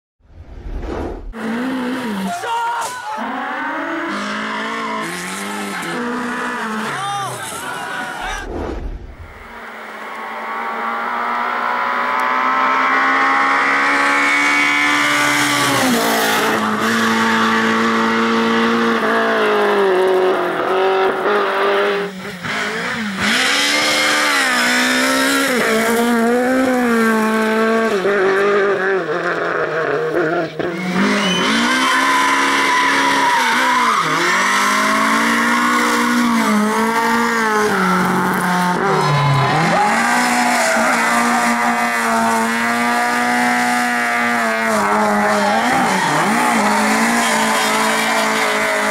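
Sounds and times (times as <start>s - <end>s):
rally car engine revving: 0.8s - 48.9s
tyre squeal: 30.7s - 36.6s.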